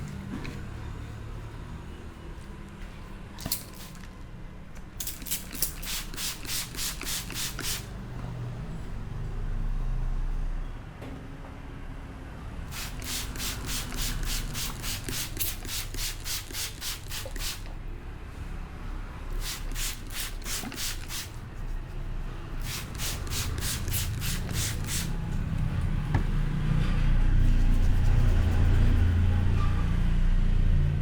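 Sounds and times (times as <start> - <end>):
hands rubbing head: 27.4 - 29.6.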